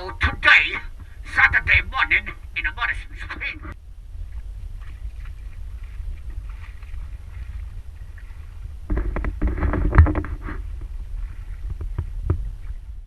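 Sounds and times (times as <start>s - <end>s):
steady low rumble: 0.0s - 13.0s
knocks and clatter: 8.9s - 10.6s.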